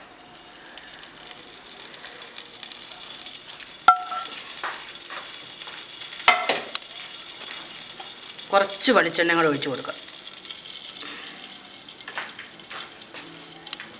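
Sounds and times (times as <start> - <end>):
oil sizzling in a pan: 0.0 - 13.9
sharp metallic clink: 3.9 - 4.3.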